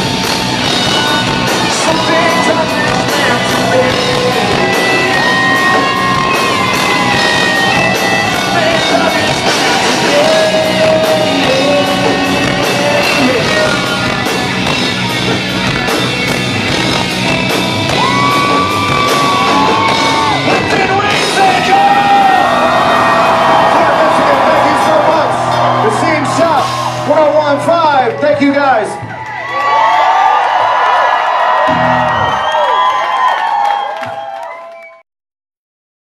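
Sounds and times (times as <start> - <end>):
drums with cymbal hits: 0.0 - 27.7
electric guitars: 0.0 - 28.3, 31.4 - 32.9.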